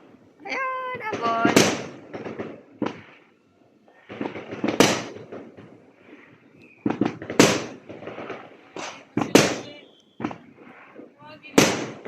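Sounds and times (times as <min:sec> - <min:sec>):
fireworks bangs and crackling: 0:00.0 - 0:12.0.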